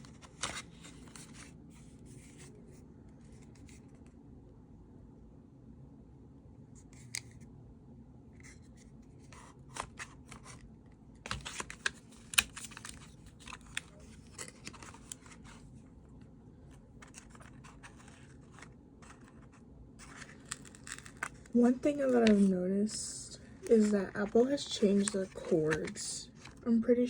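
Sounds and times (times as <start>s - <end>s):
packaging being handled: 11.2s - 15.6s, 16.6s - 26.6s.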